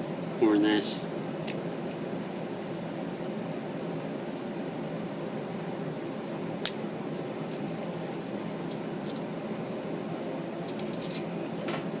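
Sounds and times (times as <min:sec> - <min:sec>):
steady fan-like hum: 0:00.0 - 0:12.0
metal hand tools clinking: 0:10.7 - 0:11.2.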